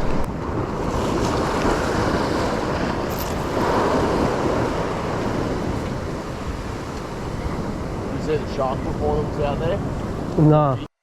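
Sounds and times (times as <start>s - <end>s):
waves washing against rocks: 0.0s - 10.3s
wind buffeting microphone: 0.0s - 10.8s.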